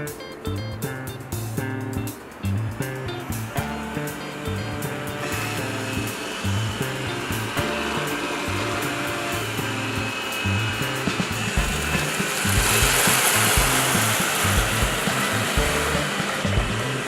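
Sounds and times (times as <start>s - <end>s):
background music with bass line: 0.0s - 17.0s
robot vacuum whirring: 3.9s - 17.0s.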